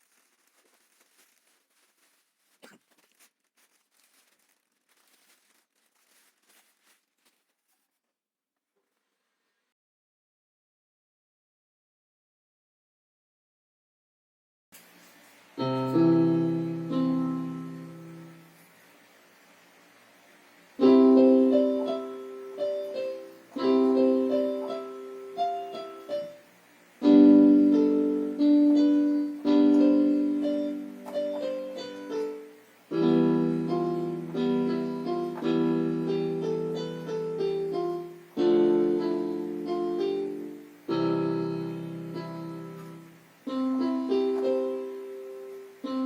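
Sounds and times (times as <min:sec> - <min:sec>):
slow piano chords: 0:15.6 - 0:18.7, 0:20.8 - 0:46.0.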